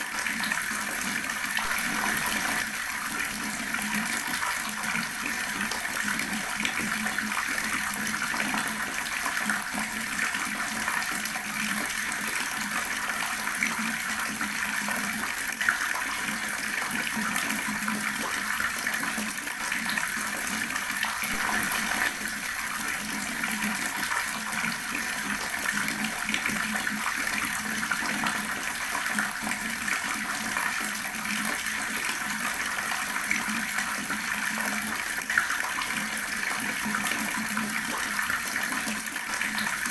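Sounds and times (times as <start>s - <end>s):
water running from a tap: 0.0s - 39.9s.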